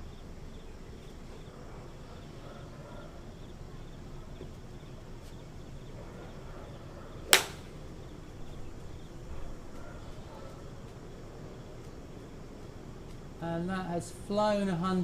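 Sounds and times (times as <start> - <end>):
golf club striking ball: 7.3 - 7.8.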